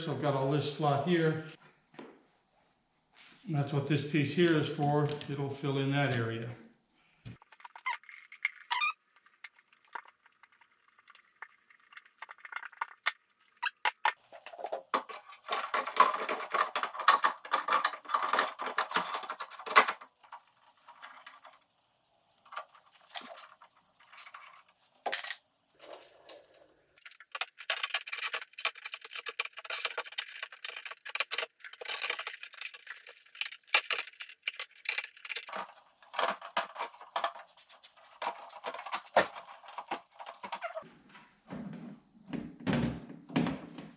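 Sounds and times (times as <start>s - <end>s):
rubbing and scraping: 7.4s - 40.9s.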